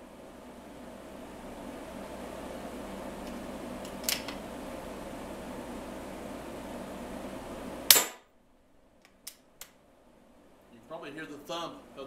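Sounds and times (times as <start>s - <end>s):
steady background hum: 0.0s - 12.0s
air rifle shot: 7.9s - 8.3s.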